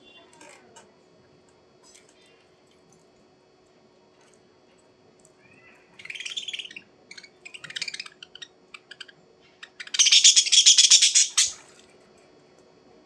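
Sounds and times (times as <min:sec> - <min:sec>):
small bird chirping: 0:06.0 - 0:11.6.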